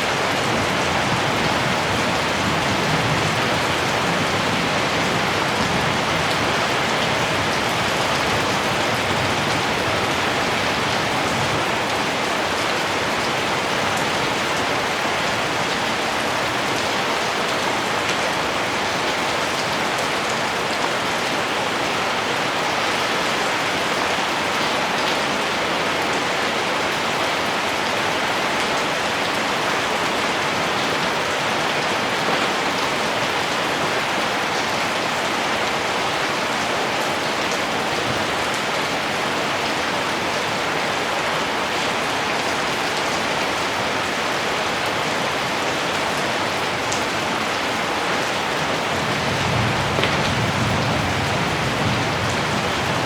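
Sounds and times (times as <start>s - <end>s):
heavy rain falling: 0.0s - 53.0s.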